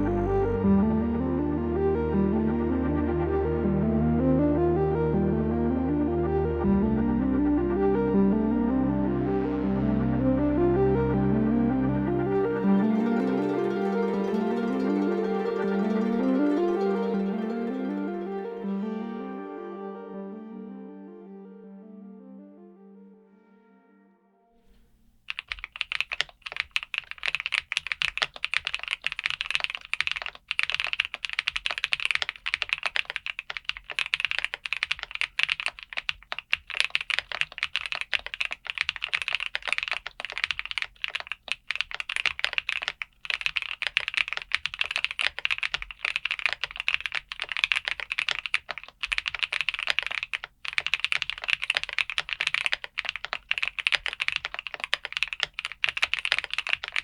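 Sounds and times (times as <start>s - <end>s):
typing on mechanical keyboard: 25.3s - 57.0s.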